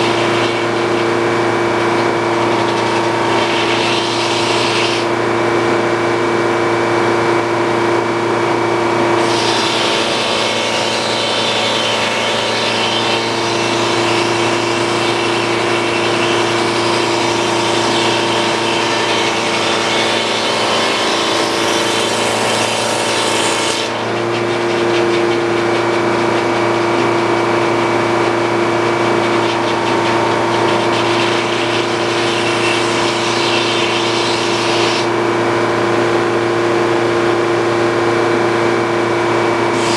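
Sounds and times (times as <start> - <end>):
saw blade cutting wood: 0.0 - 5.2, 9.1 - 35.4, 39.6 - 39.9
sawmill engine running: 0.0 - 39.9.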